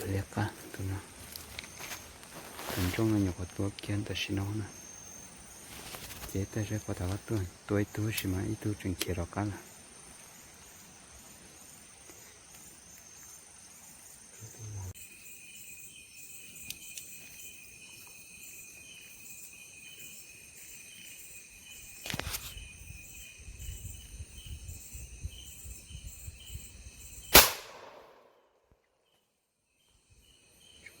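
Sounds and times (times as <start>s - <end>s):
insects chorus: 0.0s - 28.4s, 29.0s - 31.0s
loud rifle shot with echo: 27.3s - 28.3s.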